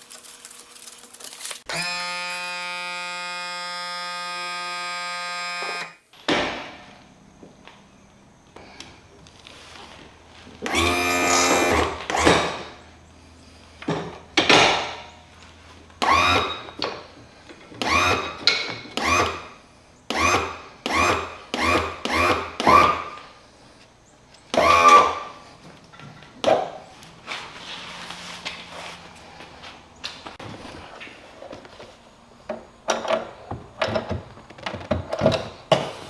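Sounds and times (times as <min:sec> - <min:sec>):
cordless drill short bursts: 0:01.7 - 0:06.0, 0:10.7 - 0:12.6, 0:16.0 - 0:16.7, 0:17.8 - 0:18.4, 0:19.0 - 0:23.2, 0:24.5 - 0:25.3.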